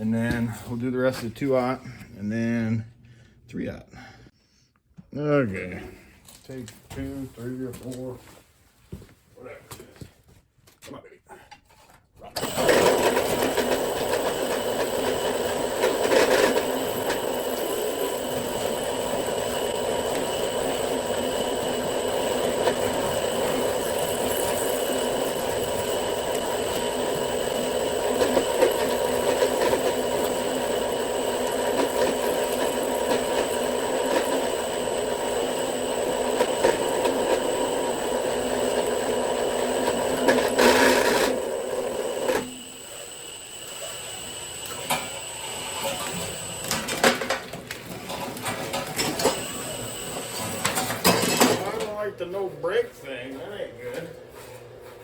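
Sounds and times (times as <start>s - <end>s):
electric drill running under load: 12.4s - 47.6s, 48.4s - 51.5s.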